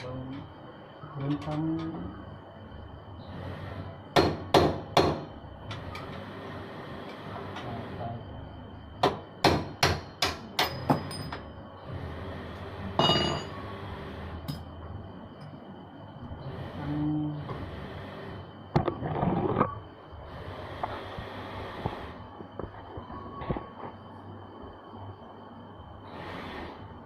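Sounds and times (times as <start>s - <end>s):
hammer knocking on metal: 4.2s - 5.3s, 9.0s - 11.1s.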